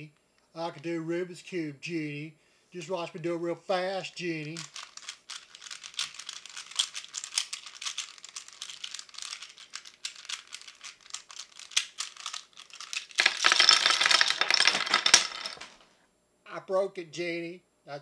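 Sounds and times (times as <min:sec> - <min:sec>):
plastic puzzle cube clicking: 0:04.5 - 0:15.6
cube rattling and breaking apart: 0:04.5 - 0:15.8.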